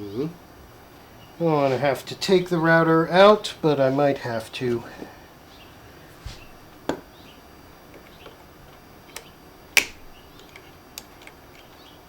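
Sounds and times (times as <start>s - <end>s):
wire clicking on metal: 7.9s - 11.8s.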